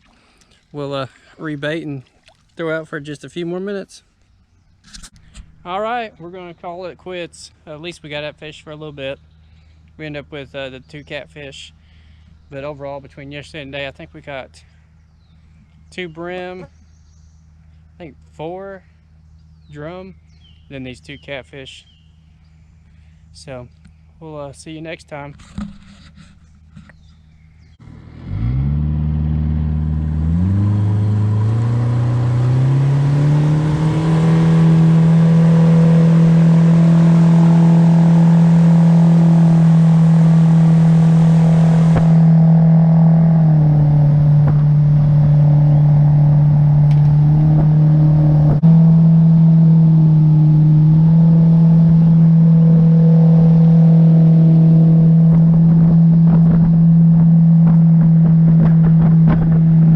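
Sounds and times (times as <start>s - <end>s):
outboard motor running: 25.5s - 59.9s.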